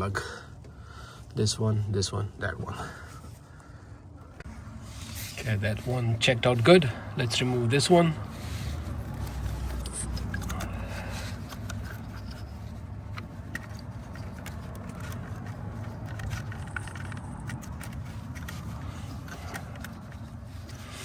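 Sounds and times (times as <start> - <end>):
clicks and scraping of hands: 8.5 - 21.0.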